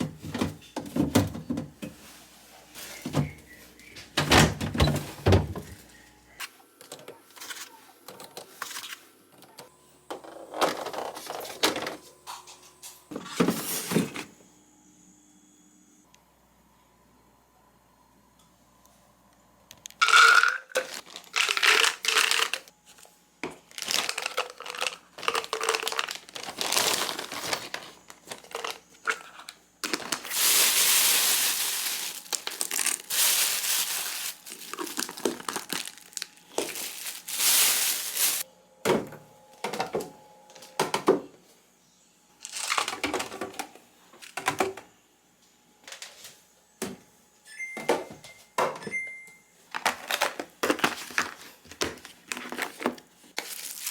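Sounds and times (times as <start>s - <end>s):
plastic bags crinkling: 20.0s - 22.7s, 23.6s - 38.5s, 49.7s - 53.9s.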